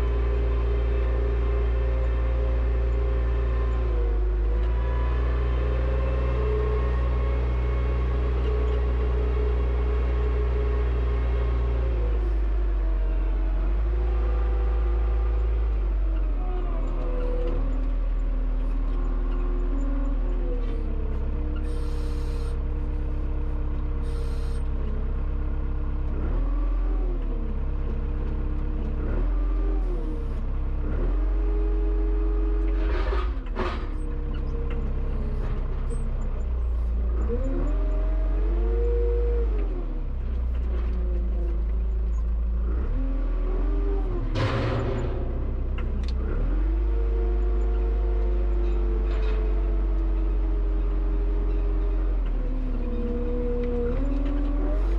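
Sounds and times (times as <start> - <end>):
tractor engine revving: 19.2 - 24.8.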